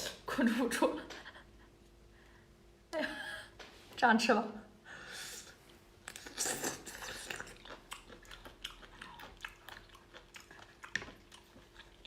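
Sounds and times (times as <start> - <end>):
chewing and biting: 6.0 - 12.0.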